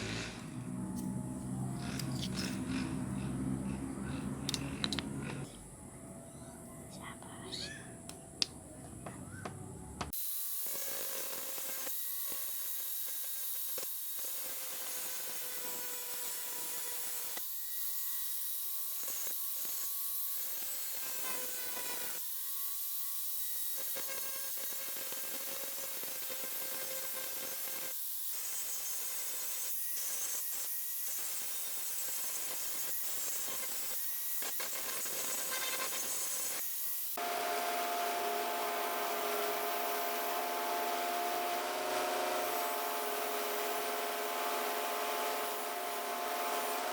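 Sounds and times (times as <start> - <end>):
electric power tool whining: 0.0 - 5.6, 10.1 - 46.9.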